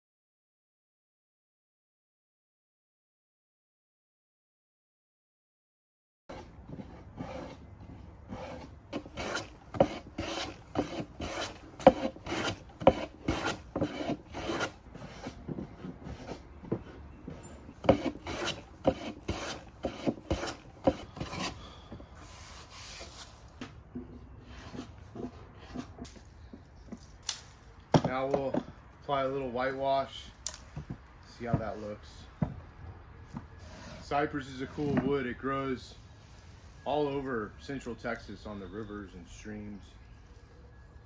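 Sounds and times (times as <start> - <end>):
rasp filing wood: 6.3 - 21.8.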